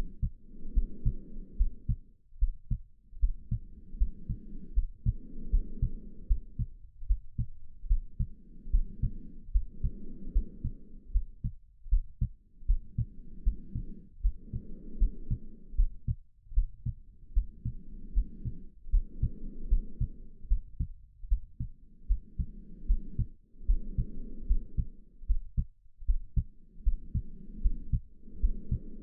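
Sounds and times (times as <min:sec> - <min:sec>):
heartbeat thumps: 0:00.0 - 0:28.9
slow breathing: 0:00.0 - 0:29.0.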